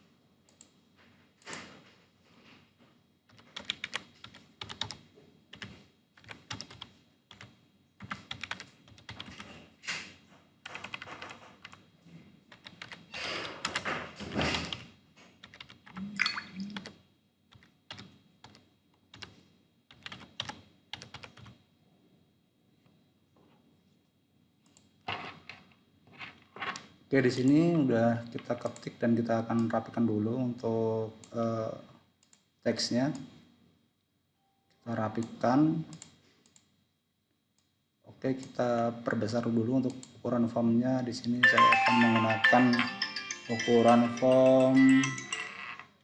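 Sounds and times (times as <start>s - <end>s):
typing on computer keyboard: 3.3s - 9.6s, 10.6s - 11.9s, 12.5s - 14.0s, 15.4s - 21.6s.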